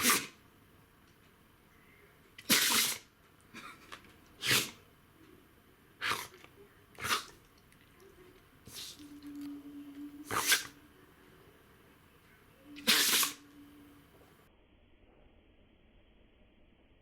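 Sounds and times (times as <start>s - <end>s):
dog sneezing: 0.0s - 0.4s, 2.4s - 3.8s, 4.4s - 4.8s, 6.0s - 6.4s, 7.0s - 7.4s, 8.7s - 9.0s, 10.2s - 10.8s, 12.8s - 13.5s.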